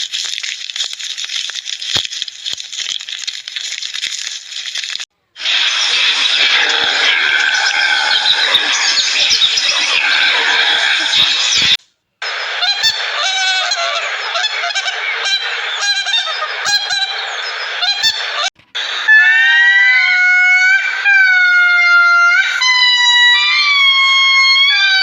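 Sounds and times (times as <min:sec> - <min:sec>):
long drawn-out bird calls: 0:05.4 - 0:25.0
short overlapping bird calls: 0:05.4 - 0:25.0.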